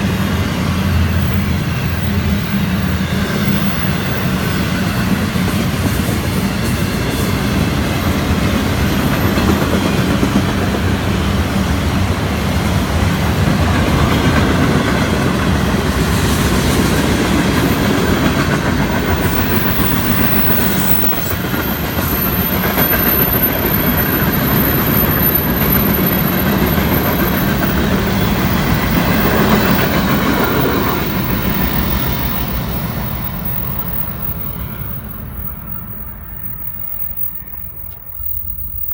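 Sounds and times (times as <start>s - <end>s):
wheels clacking over rail joints: 13.3s - 36.2s.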